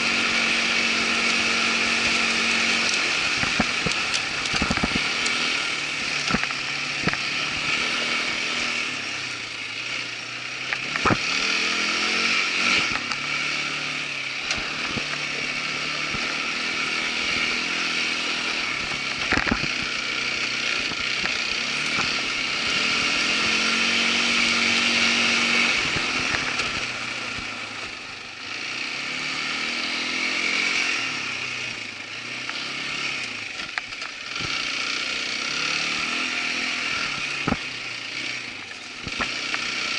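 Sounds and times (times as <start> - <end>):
quad bike engine revving: 0.0 - 39.9.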